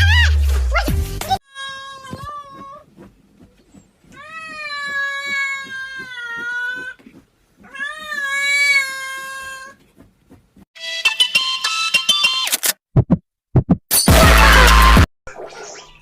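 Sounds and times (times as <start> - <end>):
cat meowing: 4.2 - 7.0, 7.6 - 9.8.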